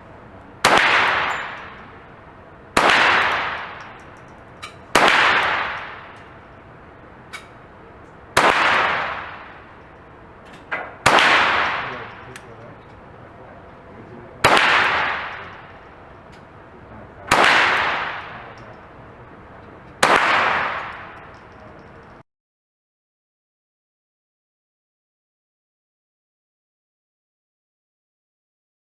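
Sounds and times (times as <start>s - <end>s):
rifle shots echoing: 0.6s - 22.2s.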